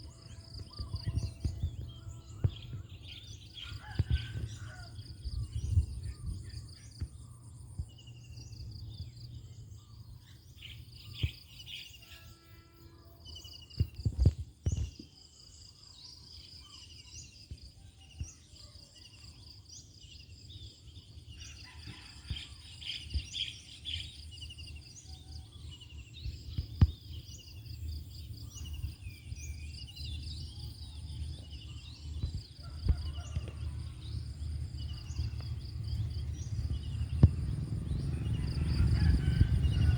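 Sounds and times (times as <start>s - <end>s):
high insect drone: 0.0s - 4.2s
low rumble: 33.6s - 39.9s.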